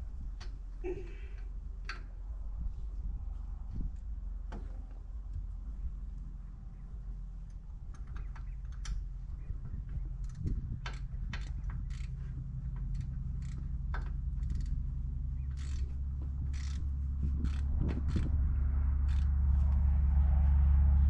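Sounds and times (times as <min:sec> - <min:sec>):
low machine hum: 0:00.0 - 0:21.0
hand tools clicking and clanking: 0:10.2 - 0:18.3, 0:19.0 - 0:19.3.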